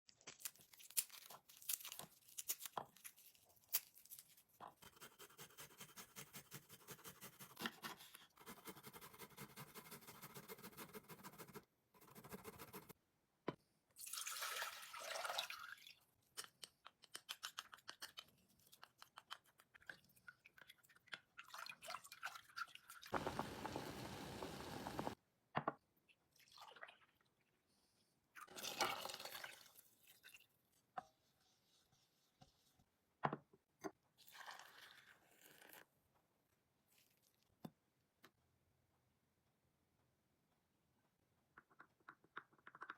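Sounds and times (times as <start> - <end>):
liquid pouring hiss: 23.2 - 25.2.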